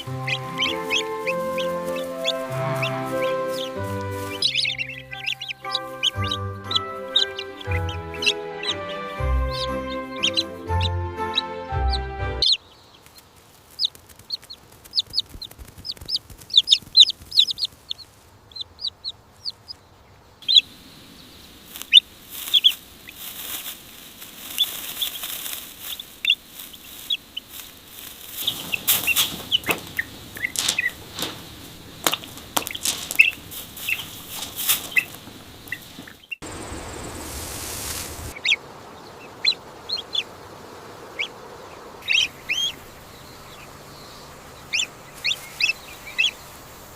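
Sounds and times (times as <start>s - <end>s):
rustling and scratching: 0.0s - 9.0s, 12.9s - 18.7s, 21.6s - 38.4s
baby chicks peeping: 0.0s - 40.4s, 41.1s - 46.9s.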